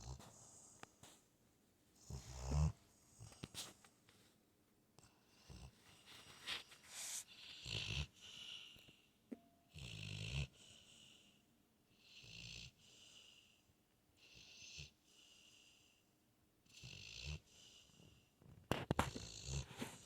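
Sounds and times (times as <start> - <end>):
dog snoring: 0.0 - 0.8, 2.0 - 3.5, 5.0 - 5.8, 6.9 - 8.9, 9.7 - 11.3, 12.0 - 13.6, 14.2 - 15.9, 16.6 - 18.1, 18.9 - 20.0.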